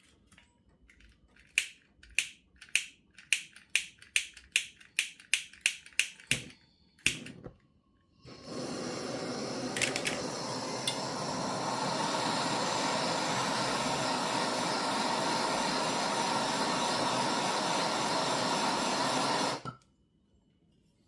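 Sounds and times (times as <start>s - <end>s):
heating tool hissing: 8.2s - 19.7s.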